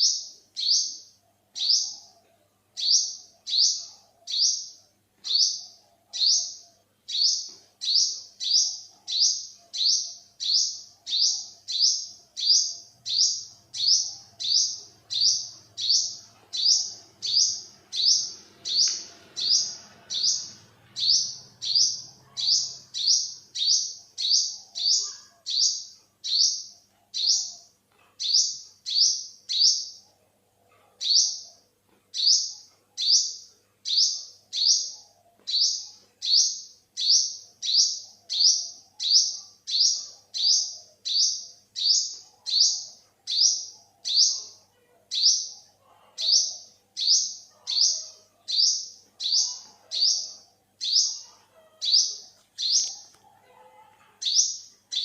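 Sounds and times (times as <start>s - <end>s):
bird high-pitched call: 2.8s - 30.0s, 46.2s - 53.0s.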